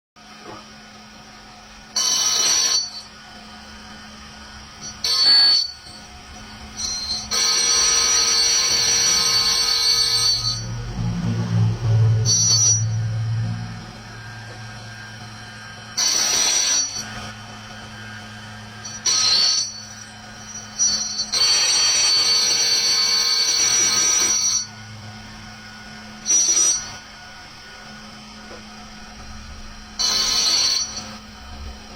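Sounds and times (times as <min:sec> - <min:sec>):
machine humming: 0:00.2 - 0:31.9
lathe tool screeching: 0:01.9 - 0:31.9.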